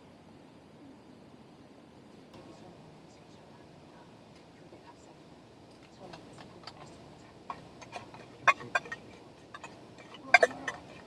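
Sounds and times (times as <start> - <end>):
utensils clinking against dishes: 7.5 - 11.0.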